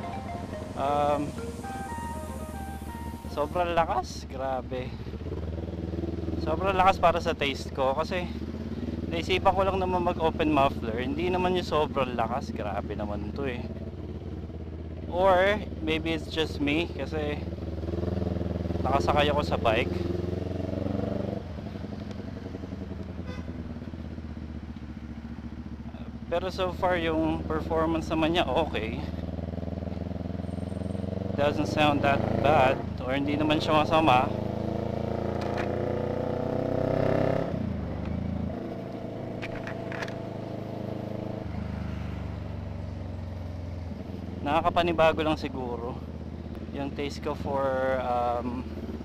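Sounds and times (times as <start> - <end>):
loud motorcycle exhaust: 5.0 - 6.6, 19.8 - 26.2, 29.0 - 33.2, 34.2 - 44.5
loud motorcycle engine open pipe: 39.3 - 40.2.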